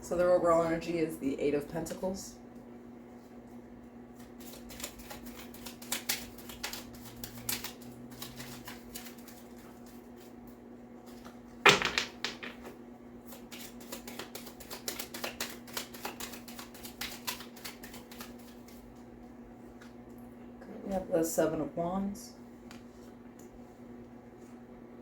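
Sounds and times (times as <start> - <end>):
cards being shuffled: 4.2 - 10.3, 13.3 - 18.9.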